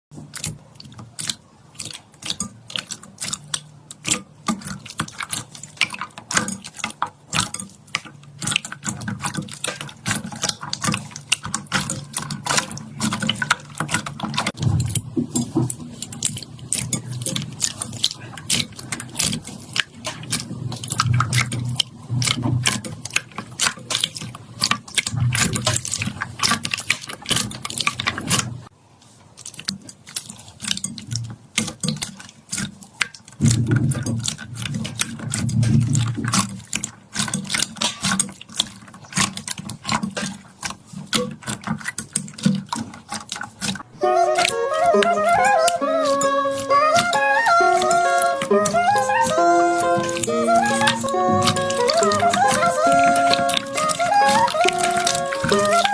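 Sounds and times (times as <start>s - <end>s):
slime squished by hand: 29.3s - 55.9s.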